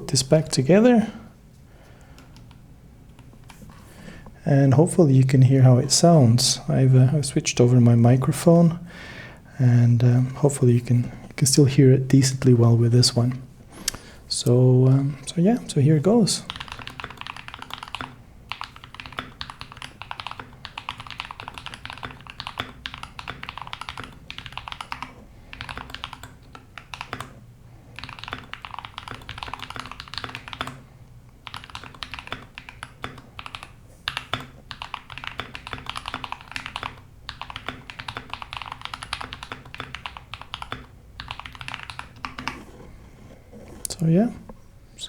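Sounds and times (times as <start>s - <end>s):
mechanical keyboard typing: 16.5s - 27.4s, 28.0s - 30.8s, 31.4s - 42.7s.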